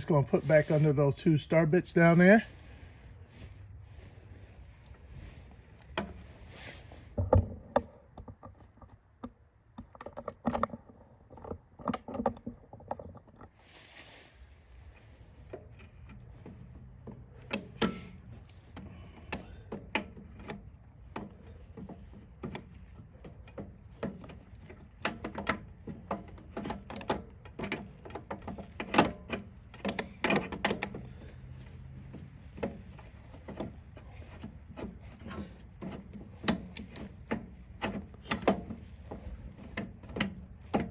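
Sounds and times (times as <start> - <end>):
clicks and light rattles: 15.4 - 40.9.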